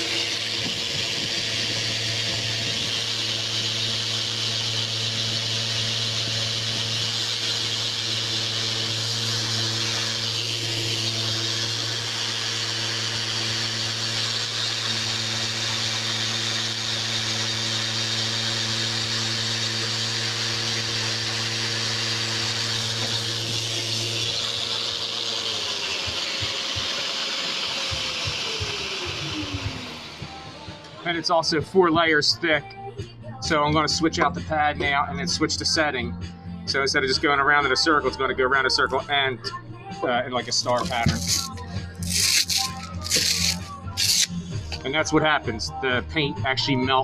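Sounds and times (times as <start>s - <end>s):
sander grinding paint on wood: 0.0s - 31.5s, 40.4s - 44.8s.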